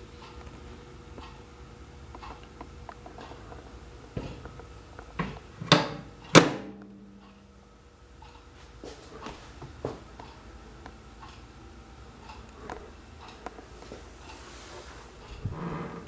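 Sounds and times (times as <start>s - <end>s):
short low hum: 14.1s - 16.0s.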